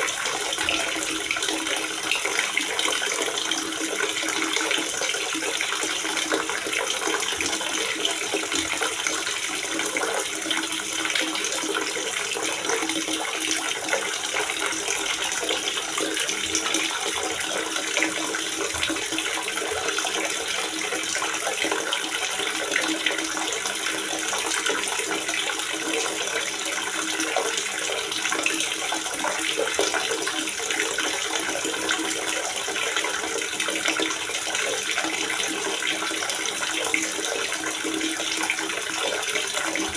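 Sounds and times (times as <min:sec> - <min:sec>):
water gurgling and splashing: 0:00.0 - 0:39.9.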